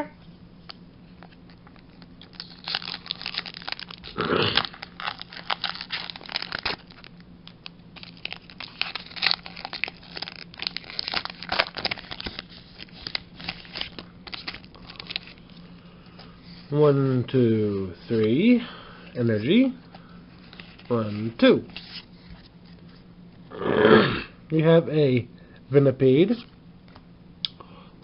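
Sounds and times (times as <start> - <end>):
foil wrapper crinkling: 1.2 - 15.7
foil wrapper tearing: 1.8 - 15.5.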